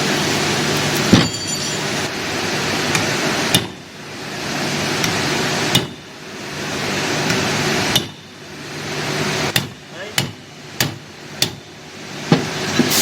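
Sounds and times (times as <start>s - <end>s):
machinery hum: 0.0s - 9.6s.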